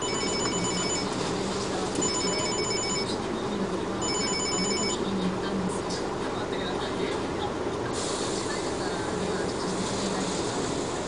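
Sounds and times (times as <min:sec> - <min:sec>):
electronic warning beeper: 0:00.0 - 0:01.1, 0:02.0 - 0:03.1, 0:04.0 - 0:05.0.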